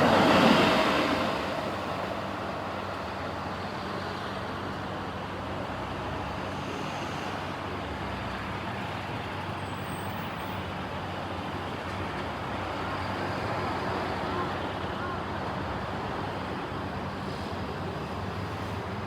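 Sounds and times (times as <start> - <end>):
heavy vehicle engine humming: 0.0 - 6.3
road traffic noise: 0.0 - 19.0.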